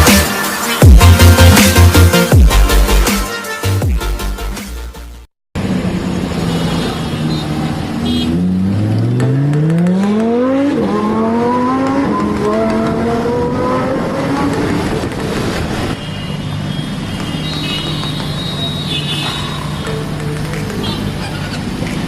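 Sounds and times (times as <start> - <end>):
sports car accelerating: 5.6 - 16.0.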